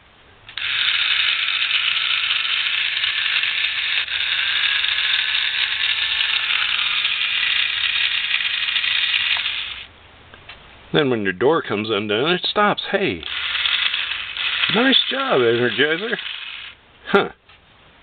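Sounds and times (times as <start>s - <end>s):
toy impact wrench whirring: 0.5s - 9.9s, 13.2s - 16.8s.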